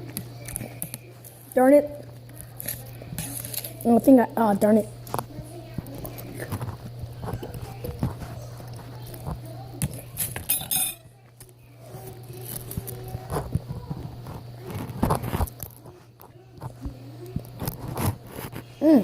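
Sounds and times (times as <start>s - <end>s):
mouth noises eating: 0.0s - 10.5s.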